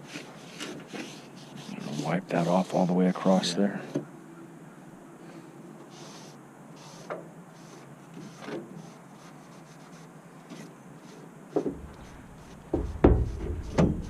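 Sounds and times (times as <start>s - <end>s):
rag rubbing on metal: 0.6s - 3.5s, 11.6s - 14.0s.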